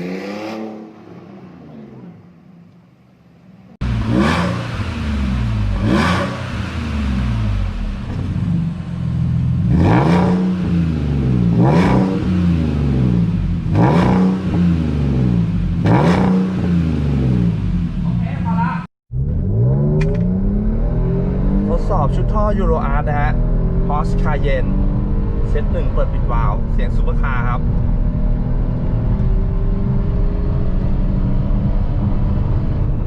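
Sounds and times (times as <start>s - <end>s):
car engine revving: 0.0s - 2.6s, 3.4s - 33.0s
car engine idling: 3.8s - 11.6s.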